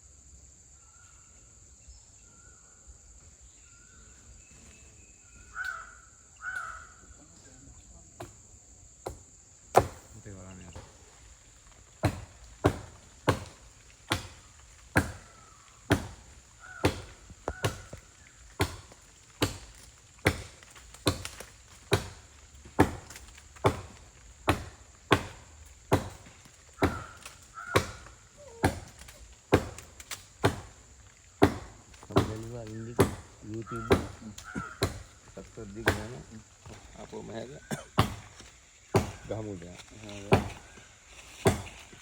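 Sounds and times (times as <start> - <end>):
axe chopping wood: 9.0 - 10.2, 12.0 - 30.8, 31.4 - 35.2, 35.8 - 36.8, 37.7 - 39.4, 40.2 - 40.7, 41.3 - 42.0.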